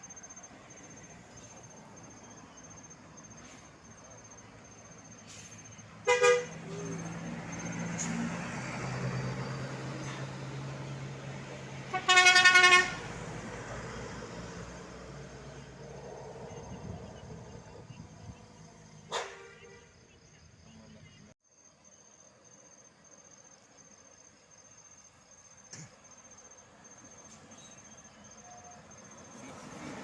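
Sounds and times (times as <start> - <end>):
bus engine drone: 0.0 - 21.4, 22.3 - 30.0
bus air horn blasts: 6.0 - 6.8, 11.7 - 13.3, 19.1 - 20.1.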